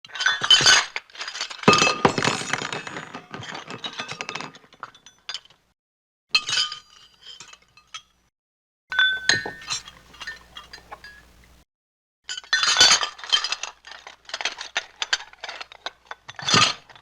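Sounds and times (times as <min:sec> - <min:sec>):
dishes and glasses clinking: 0:08.9 - 0:11.4.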